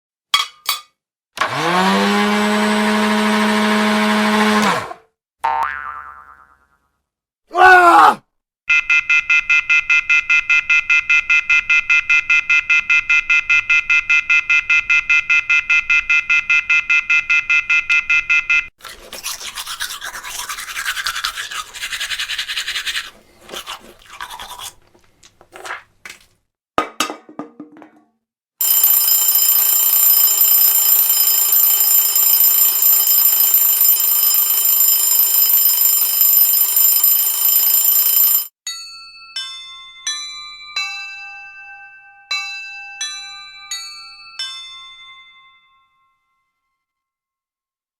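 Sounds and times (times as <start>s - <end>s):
high-pitched buzzing tone: 28.6s - 38.5s
rapidly pulsing electronic buzz: 28.6s - 38.5s.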